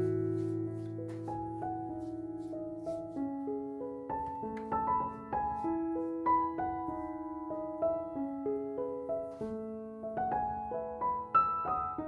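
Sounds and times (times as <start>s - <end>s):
slow piano melody: 0.0s - 12.0s.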